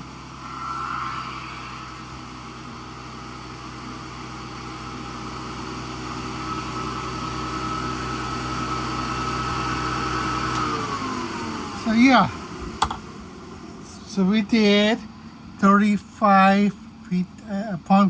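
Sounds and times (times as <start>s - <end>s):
vacuum cleaner motor whining: 0.3s - 13.7s.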